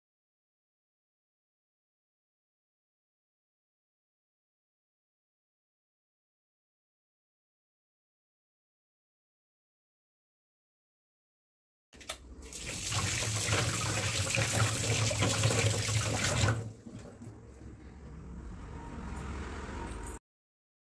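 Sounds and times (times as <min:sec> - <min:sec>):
tap water running into sink: 0:12.0 - 0:17.3.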